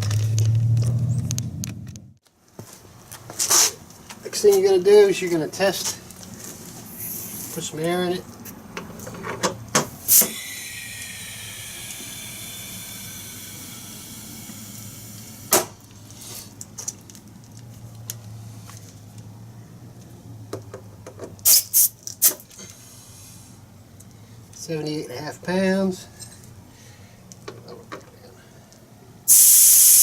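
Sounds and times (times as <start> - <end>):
compressed air hissing: 6.9 - 7.5, 9.8 - 16.4, 21.4 - 23.5, 29.3 - 30.0
air chuck clicking on valve: 10.1 - 15.7.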